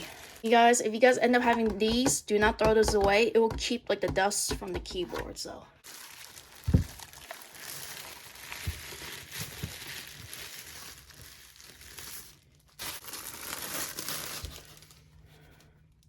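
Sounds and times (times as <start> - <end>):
soft bumps: 1.4 - 5.4
packaging crinkling and rustling: 5.8 - 15.5.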